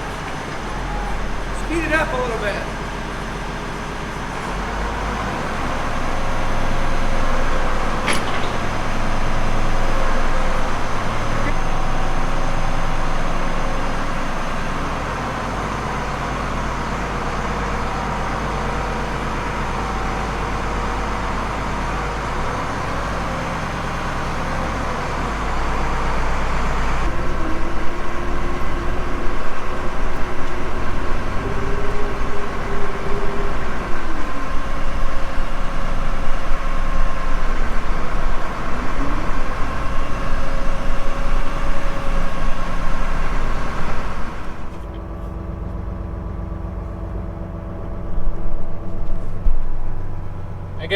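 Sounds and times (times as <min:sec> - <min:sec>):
tractor engine running: 0:00.0 - 0:50.9.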